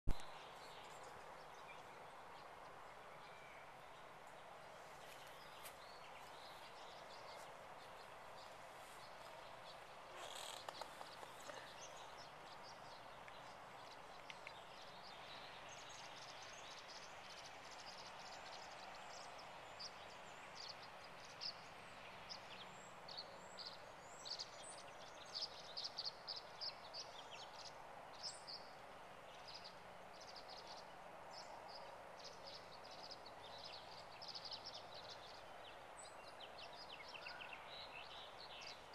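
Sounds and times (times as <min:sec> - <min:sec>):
faint background hiss: 0:00.1 - 0:38.9
birds chirping: 0:05.0 - 0:28.7.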